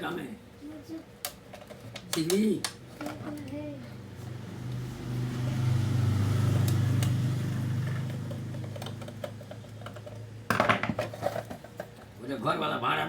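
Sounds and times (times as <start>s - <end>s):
low motor hum: 2.9s - 10.4s.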